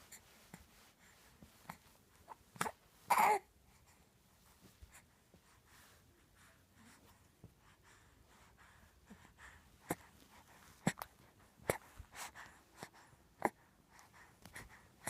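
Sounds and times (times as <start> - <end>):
newborn baby vocalizing: 2.6 - 3.5.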